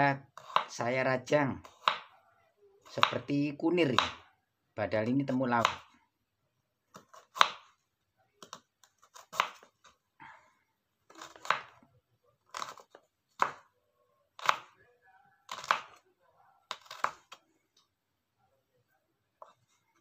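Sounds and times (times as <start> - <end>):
knife chopping root: 0.4 - 0.7, 1.6 - 2.1, 2.9 - 4.2, 6.9 - 7.7, 8.4 - 9.7, 11.2 - 11.8, 12.5 - 13.7, 14.4 - 14.8, 15.5 - 16.0, 16.7 - 17.4.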